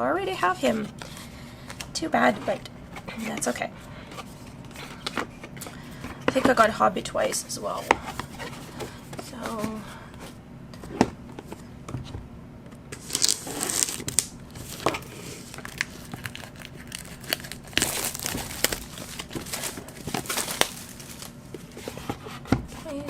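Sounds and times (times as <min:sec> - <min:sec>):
packaging crinkling and tearing: 0:13.0 - 0:21.4.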